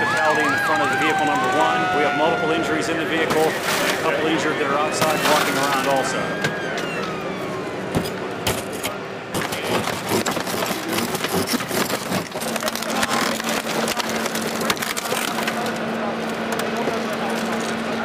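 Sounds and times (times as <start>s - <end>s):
emergency vehicle siren winding down: 0.0s - 8.3s.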